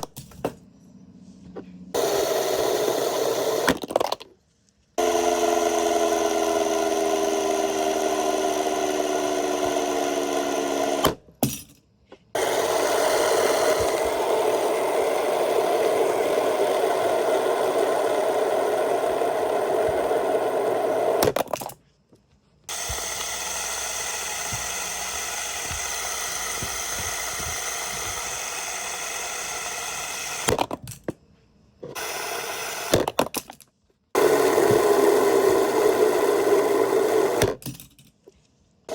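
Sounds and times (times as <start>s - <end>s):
fidget spinner whirring: 22.7s - 30.6s.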